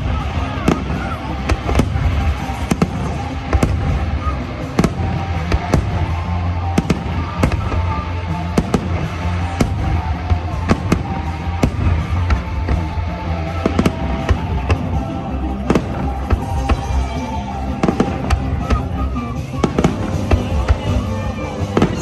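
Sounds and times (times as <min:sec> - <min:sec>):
fireworks bangs: 0:00.0 - 0:22.0
music playing: 0:00.0 - 0:22.0.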